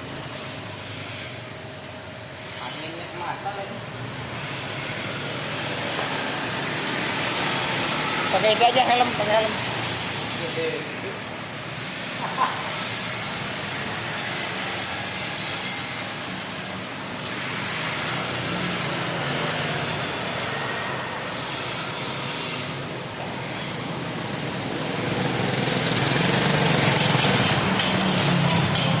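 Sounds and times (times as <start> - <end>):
motor tricycle engine running: 22.7 - 29.0.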